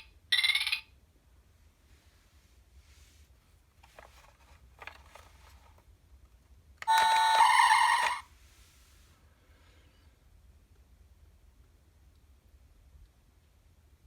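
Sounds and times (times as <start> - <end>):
faint handling noises: 2.0 - 6.5.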